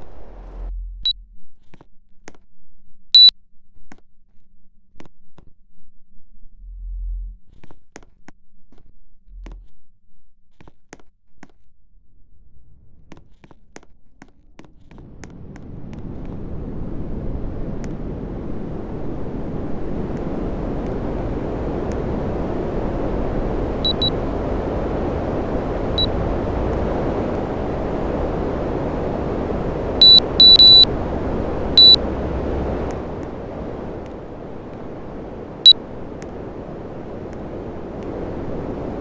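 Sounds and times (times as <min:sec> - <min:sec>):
air conditioner blowing air: 0:15.6 - 0:39.0
short electronic beeps: 0:23.8 - 0:24.1, 0:30.0 - 0:30.9, 0:31.8 - 0:32.0.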